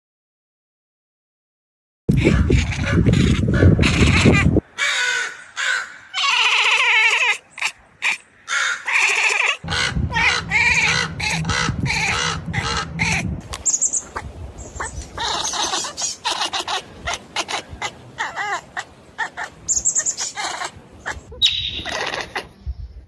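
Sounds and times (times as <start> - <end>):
cats meowing: 2.1 - 4.6, 5.7 - 13.3, 14.8 - 22.6
low hum: 9.6 - 15.2.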